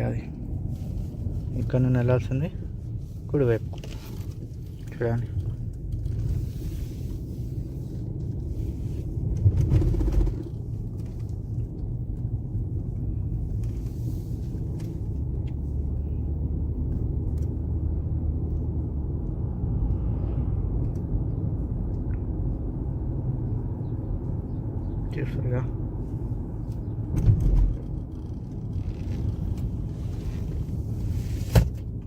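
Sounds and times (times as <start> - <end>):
car engine and road noise: 0.0 - 32.0.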